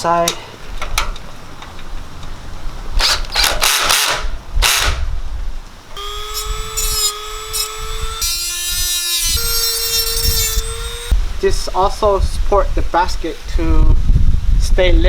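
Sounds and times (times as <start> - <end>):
power drill whining: 3.0 - 5.1, 6.0 - 11.2.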